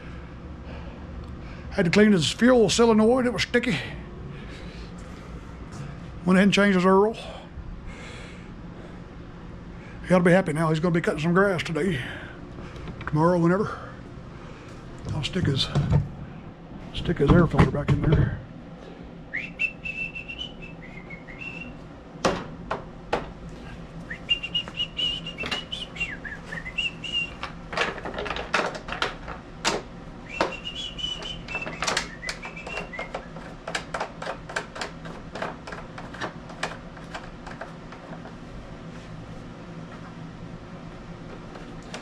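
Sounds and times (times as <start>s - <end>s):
man whistling a tune: 19.3s - 21.8s, 24.1s - 27.4s, 30.2s - 33.2s
clicks and knocks of hand work: 27.1s - 38.4s, 41.3s - 42.0s.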